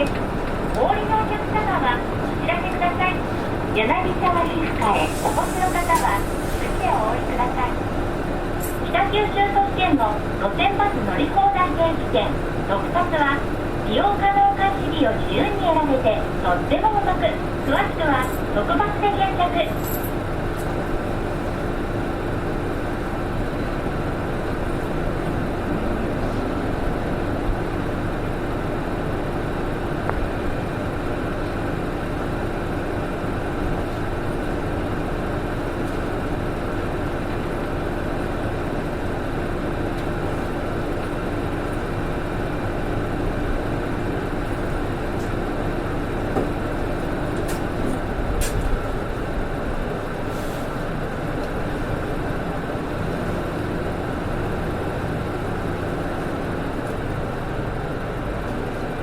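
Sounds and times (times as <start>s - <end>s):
bus engine and road noise: 0.0s - 59.0s.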